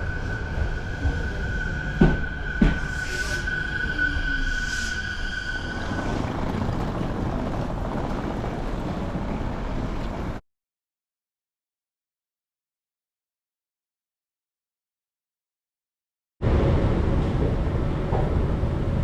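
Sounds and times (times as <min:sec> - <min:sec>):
electric train rumble: 0:00.0 - 0:10.4, 0:16.4 - 0:19.0.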